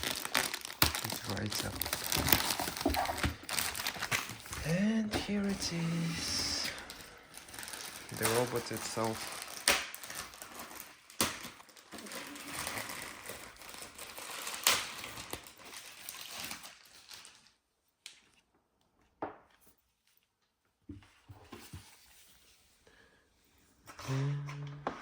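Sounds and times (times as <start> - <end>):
packaging rustling and crinkling: 0.0 - 18.3.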